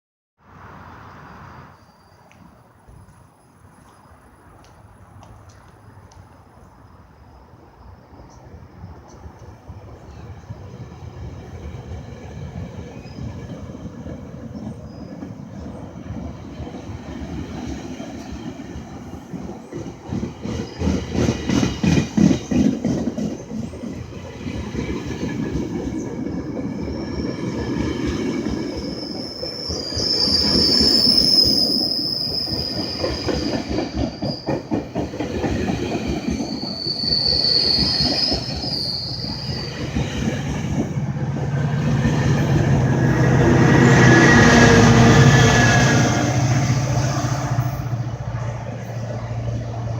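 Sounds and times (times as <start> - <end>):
train wheels clacking over rail joints: 13.9 - 31.6, 32.4 - 43.6
high-pitched wheel squeals: 28.6 - 34.7, 36.2 - 40.0.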